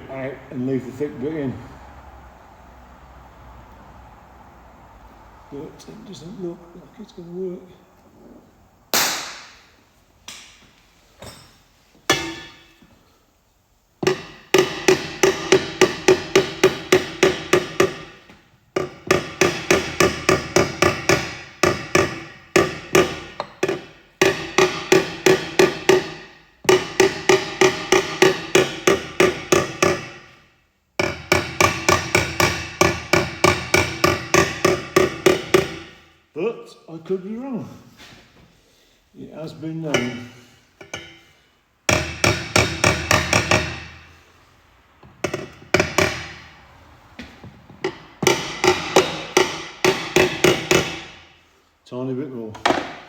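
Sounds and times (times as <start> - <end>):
hammer tapping on steel pipe: 12.1 - 12.9, 14.0 - 30.4, 31.0 - 36.1, 39.9 - 41.3, 41.9 - 44.1, 45.2 - 46.5, 47.8 - 51.3.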